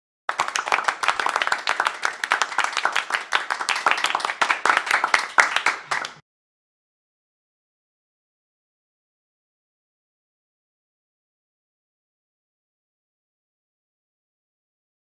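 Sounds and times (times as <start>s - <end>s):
small group clapping: 0.3s - 6.2s.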